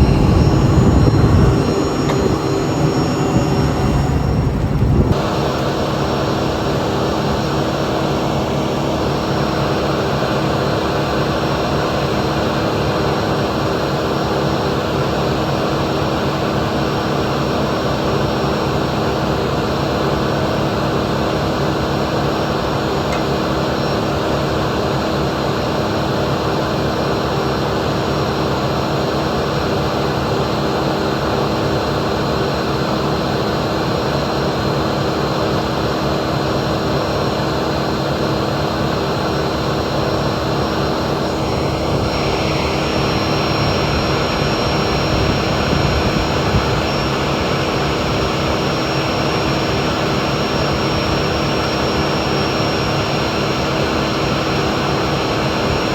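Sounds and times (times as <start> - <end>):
high whine: 0.0 - 12.0, 39.1 - 55.9
diesel machinery engine drone: 0.0 - 55.9.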